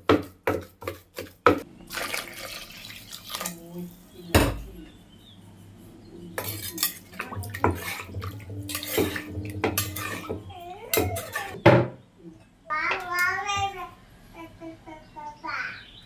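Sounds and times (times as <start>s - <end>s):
pestle knocking in a mortar: 0.0s - 1.6s, 6.4s - 12.0s.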